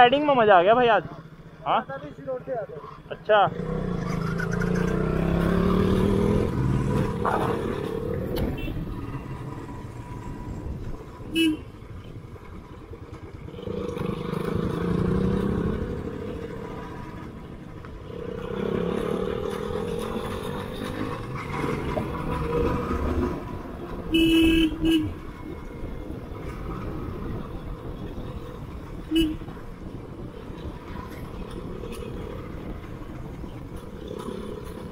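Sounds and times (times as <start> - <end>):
motorcycle engine thumping: 8.2 - 8.9
vehicle horn honking: 11.3 - 11.7, 24.1 - 25.2, 29.1 - 29.5.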